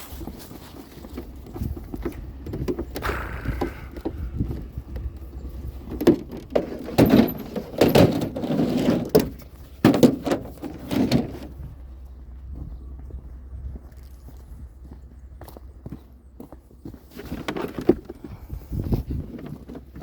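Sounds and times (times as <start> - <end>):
scrap metal knocking and rattling: 0.8 - 11.8
steady low rumble: 1.0 - 6.6, 11.5 - 16.9.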